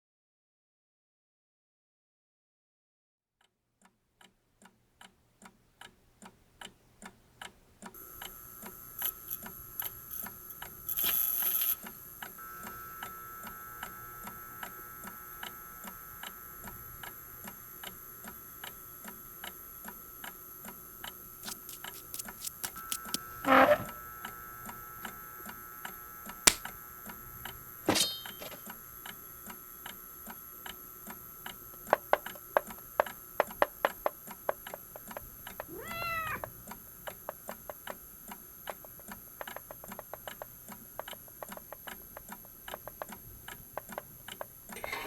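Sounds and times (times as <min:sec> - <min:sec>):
high electronic hum: 0:08.0 - 0:31.8.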